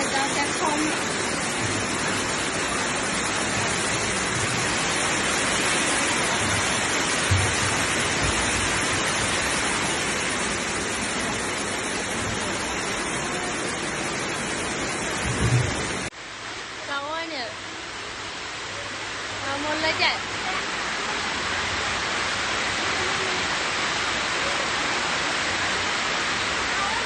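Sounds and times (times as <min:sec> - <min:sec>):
water rushing: 0:00.0 - 0:27.0
low thuds: 0:06.4 - 0:09.4.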